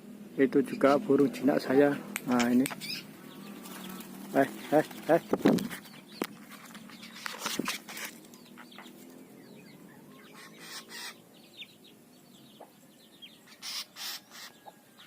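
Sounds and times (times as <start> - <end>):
low repeated bird call: 1.8 - 15.0
high bird chirps: 2.2 - 4.2, 5.2 - 15.0
rustling noise: 4.7 - 8.4.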